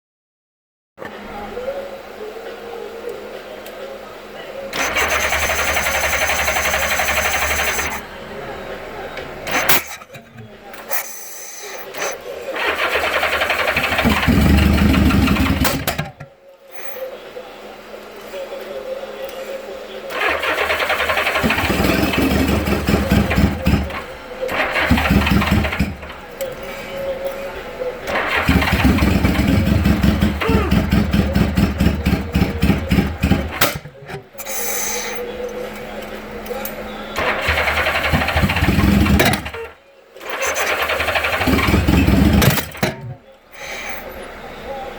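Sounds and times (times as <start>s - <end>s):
engine cranking on starter: 4.7s - 8.0s, 9.4s - 17.1s, 20.1s - 27.4s, 28.0s - 44.2s.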